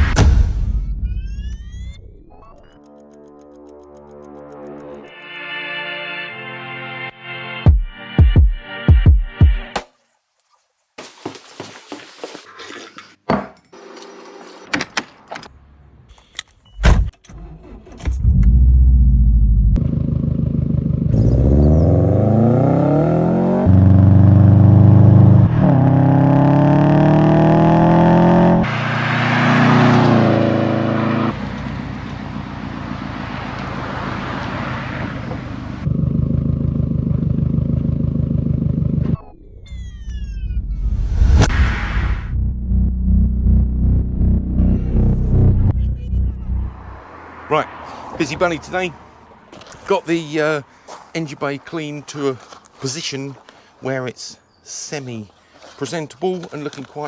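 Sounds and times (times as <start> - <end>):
car engine starting and revving: 17.3 - 48.8.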